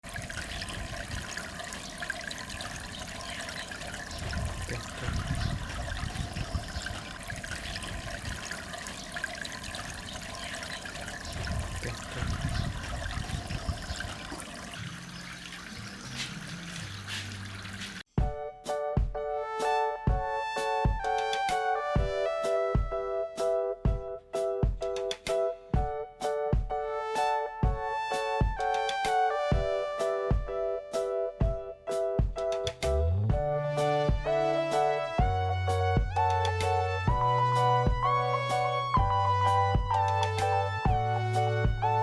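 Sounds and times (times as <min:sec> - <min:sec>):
water trickling and splashing: 0:00.0 - 0:18.1, 0:38.1 - 0:42.0.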